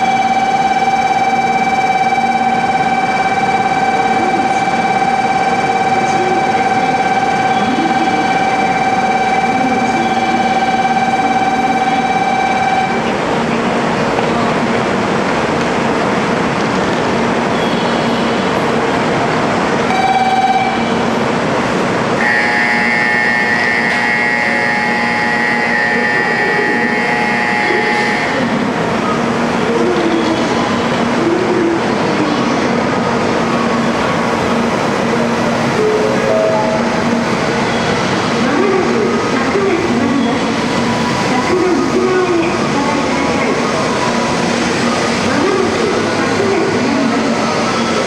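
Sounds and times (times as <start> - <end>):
high-speed train rumbling: 0.0 - 48.0
high multi-tone whine: 19.9 - 31.2, 33.5 - 48.0.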